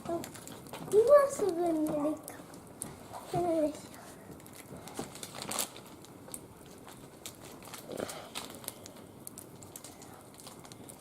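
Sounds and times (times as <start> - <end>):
wood fire crackling and popping: 0.0 - 11.0.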